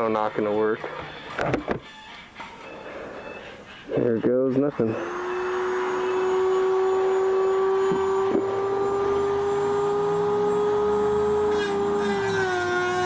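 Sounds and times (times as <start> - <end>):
motor whining: 4.5 - 13.0.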